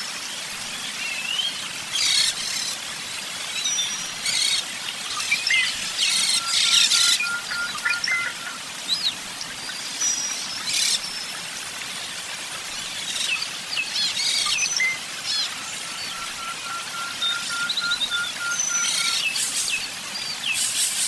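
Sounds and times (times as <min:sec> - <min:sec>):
birds chirping: 0:03.6 - 0:11.3, 0:13.0 - 0:21.0
harsh scratchy bird calls: 0:18.6 - 0:19.8, 0:20.5 - 0:21.0.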